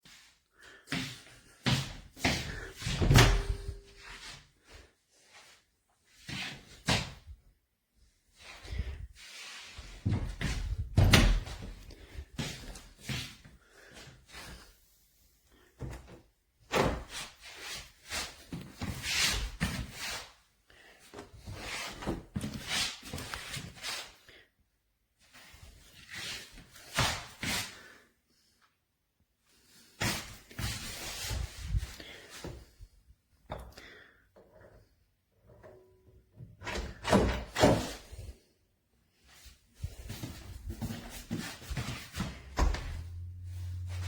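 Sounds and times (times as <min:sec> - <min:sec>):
door slamming: 0:02.9 - 0:04.0, 0:10.9 - 0:11.6, 0:42.5 - 0:43.2.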